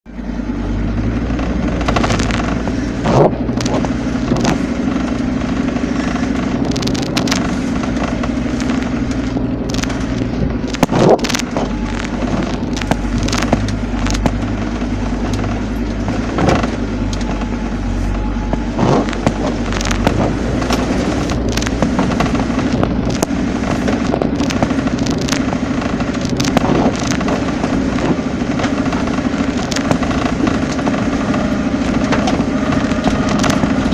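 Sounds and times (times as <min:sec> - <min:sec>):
vehicle engine running: 0:00.1 - 0:33.9.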